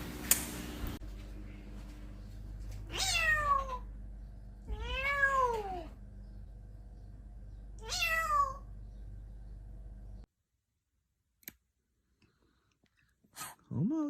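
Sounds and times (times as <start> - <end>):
cat meowing: 2.9 - 3.8, 4.7 - 5.9, 7.8 - 8.7.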